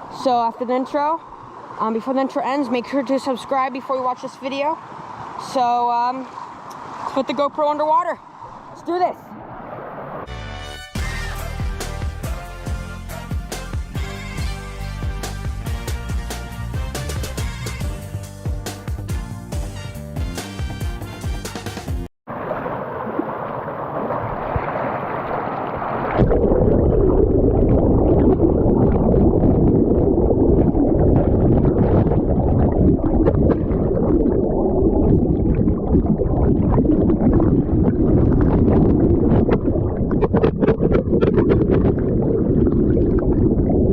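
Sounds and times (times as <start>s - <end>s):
bubbles clicking and crackling: 26.1s - 43.9s
muffled underwater rumble: 26.1s - 43.9s.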